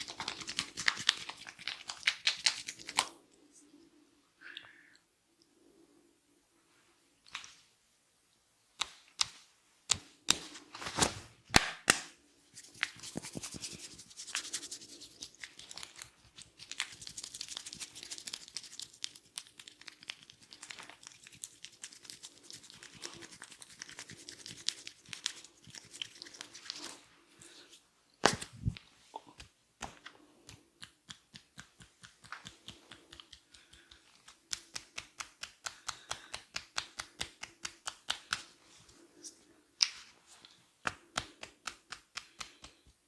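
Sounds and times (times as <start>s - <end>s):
hair crackling and rustling: 0.0s - 3.1s, 10.3s - 27.1s.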